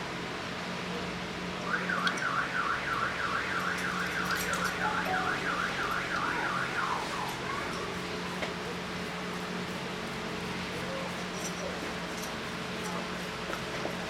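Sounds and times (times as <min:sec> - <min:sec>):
electronic siren warbling: 0:01.7 - 0:08.3.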